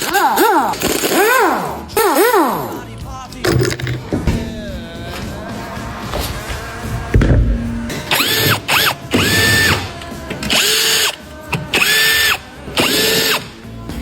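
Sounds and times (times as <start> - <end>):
electric power tool whining: 7.9 - 13.6.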